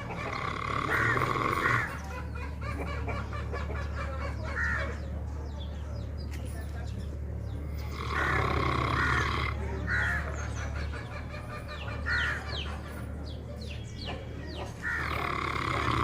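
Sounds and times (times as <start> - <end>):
dog snoring: 0.0 - 2.0, 7.7 - 9.6, 14.9 - 16.0.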